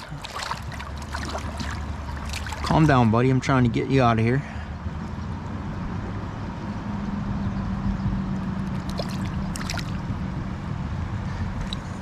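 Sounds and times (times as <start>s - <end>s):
stream running over rocks: 0.0s - 3.3s, 8.7s - 10.0s
low steady hum: 0.0s - 4.9s.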